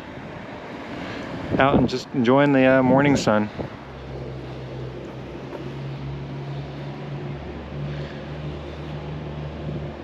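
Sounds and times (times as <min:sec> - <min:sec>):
outdoor background noise: 0:00.0 - 0:10.0.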